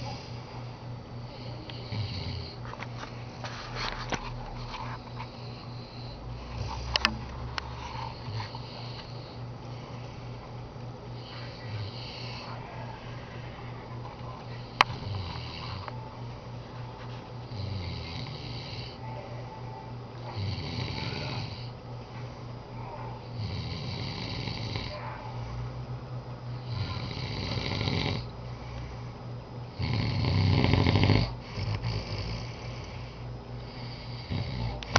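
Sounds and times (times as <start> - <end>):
man snoring: 1.3 - 2.6, 8.0 - 9.4, 11.2 - 12.8, 14.6 - 15.9, 17.5 - 19.0, 20.3 - 21.7, 23.3 - 25.0, 26.6 - 28.3, 29.7 - 32.7, 33.6 - 34.9.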